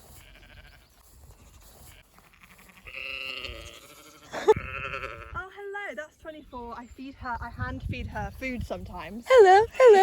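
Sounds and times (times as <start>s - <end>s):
sheep bleating: 0.0s - 5.5s.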